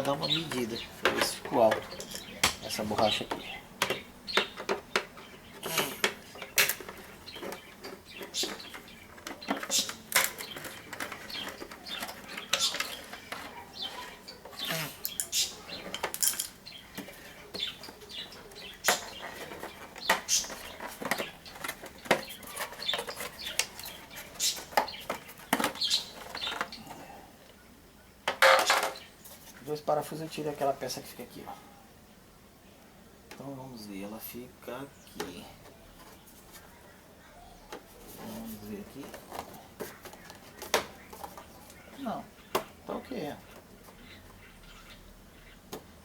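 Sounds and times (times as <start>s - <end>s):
plastic parts clattering: 0.0s - 18.0s, 18.7s - 27.0s, 28.3s - 29.0s.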